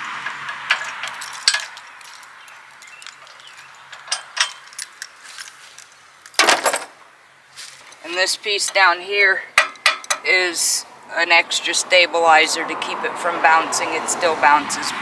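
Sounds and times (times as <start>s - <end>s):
metal clatter: 0.0s - 7.0s, 9.6s - 10.3s
keys jangling: 0.6s - 7.0s.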